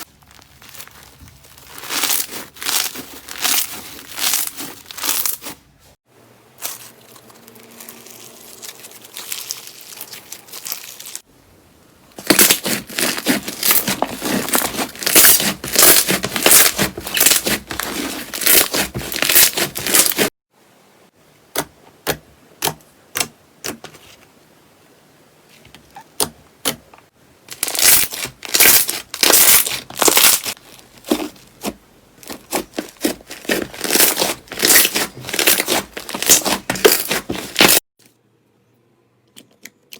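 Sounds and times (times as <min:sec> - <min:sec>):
slime crackling and popping: 0:00.0 - 0:05.5, 0:12.2 - 0:20.3, 0:27.5 - 0:37.8.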